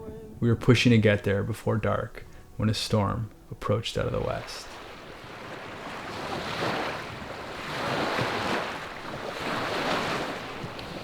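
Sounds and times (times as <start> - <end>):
choppy lake water: 4.0 - 11.0.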